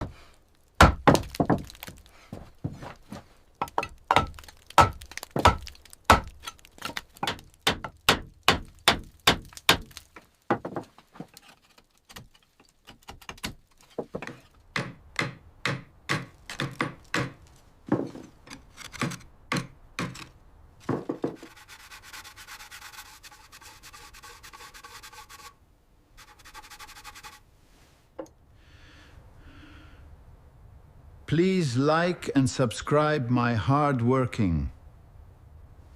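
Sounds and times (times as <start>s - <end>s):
hand tools knocking on wood: 10.5s - 11.3s, 13.3s - 18.2s, 20.8s - 21.5s.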